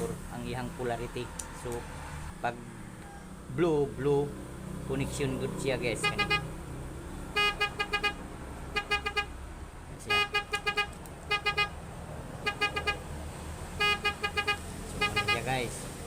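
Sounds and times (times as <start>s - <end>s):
car alarm beeping: 6.0s - 6.4s, 7.4s - 8.2s, 8.8s - 9.3s, 10.1s - 11.7s, 12.5s - 13.0s, 13.8s - 15.4s.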